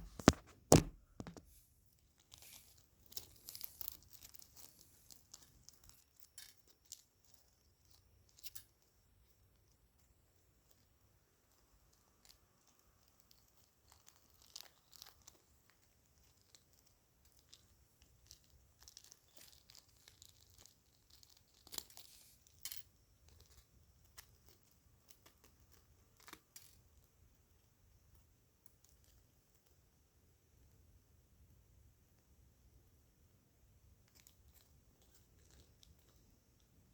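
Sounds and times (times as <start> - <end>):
eggshell cracking and crumbling: 0.0 - 1.5, 2.2 - 8.9, 10.6 - 27.2.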